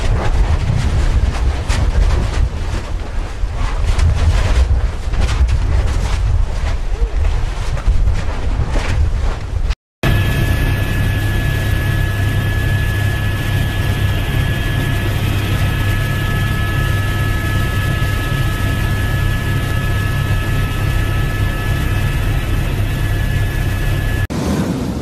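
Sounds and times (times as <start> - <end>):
aircraft engine drone: 10.0 - 25.0
high engine whine: 10.0 - 25.0.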